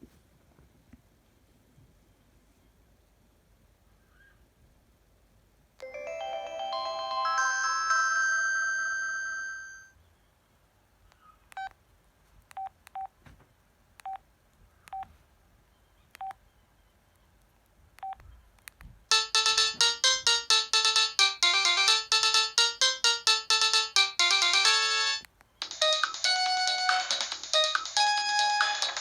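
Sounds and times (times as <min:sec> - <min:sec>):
fast ringtone melody: 0:05.8 - 0:09.9, 0:19.1 - 0:29.0
chiming phone ringtone: 0:05.8 - 0:10.0, 0:19.1 - 0:29.0.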